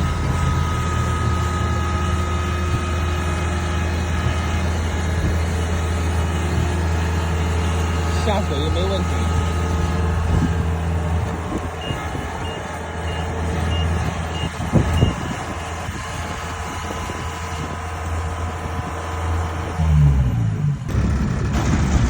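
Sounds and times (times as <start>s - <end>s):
combine harvester engine running: 0.0s - 22.0s
short high warning beeps: 11.8s - 15.4s.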